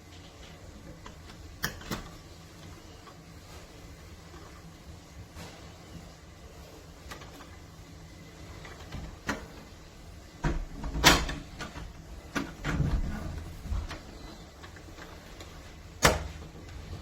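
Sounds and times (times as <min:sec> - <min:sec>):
door shifting rumble: 0:10.4 - 0:15.1.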